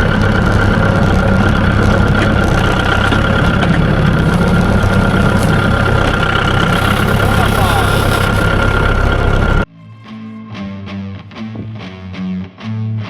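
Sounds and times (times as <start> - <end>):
engine idling: 0.0 - 9.7.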